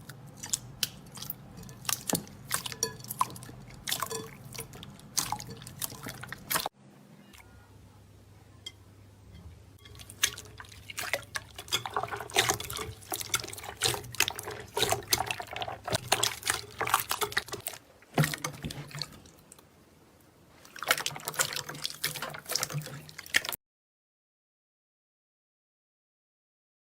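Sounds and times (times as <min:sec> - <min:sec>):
slime squishing wet clicks: 0:00.4 - 0:06.7.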